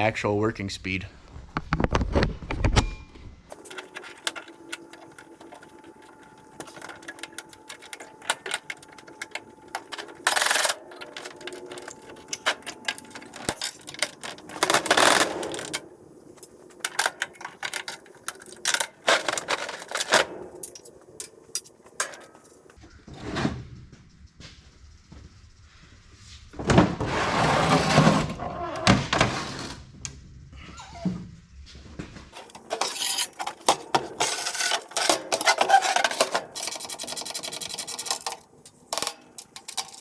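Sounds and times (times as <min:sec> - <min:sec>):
metallic clicks and clanks: 0:02.8 - 0:22.8, 0:32.3 - 0:40.0.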